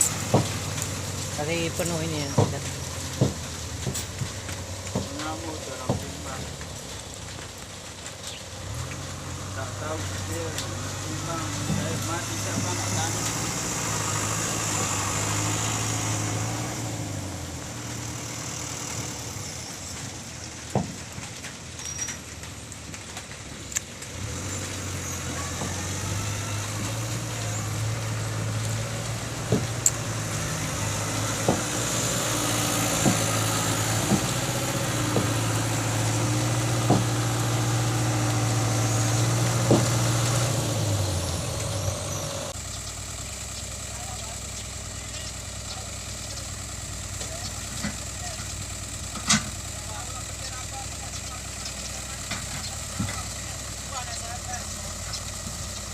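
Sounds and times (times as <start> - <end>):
heavy machine engine running: 0.0 - 55.9
sharp knocks: 31.3 - 35.5.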